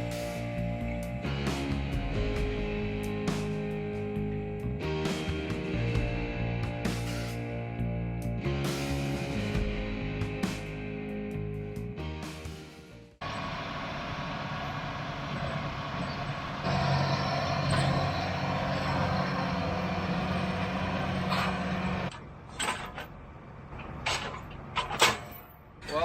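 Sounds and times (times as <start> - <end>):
tractor engine running: 13.2 - 26.0.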